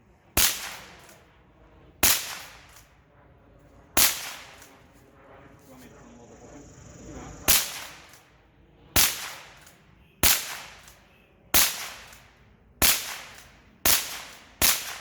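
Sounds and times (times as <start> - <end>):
gunshots with echo: 0.4 - 1.2, 2.0 - 2.8, 4.0 - 4.7, 7.5 - 8.2, 9.0 - 10.9, 11.6 - 12.2, 12.8 - 15.0.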